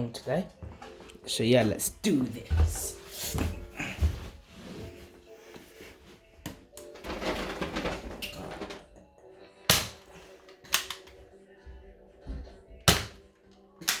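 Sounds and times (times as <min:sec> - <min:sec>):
toy pistol plastic snaps: 0:10.7 - 0:11.2.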